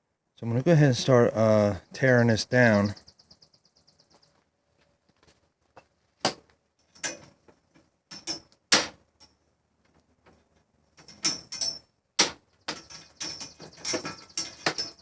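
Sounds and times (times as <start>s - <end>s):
tools clicking and knocking: 5.8s - 15.0s.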